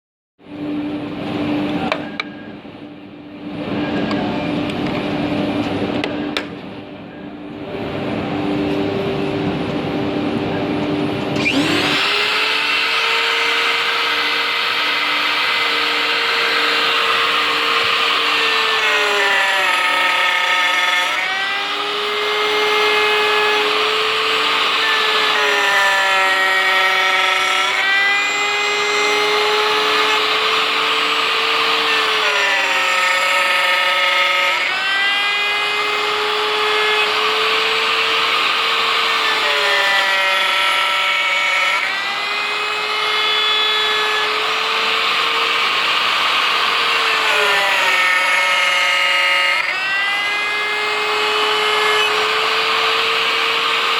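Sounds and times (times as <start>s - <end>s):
router spindle milling wood: 11.4s - 53.9s.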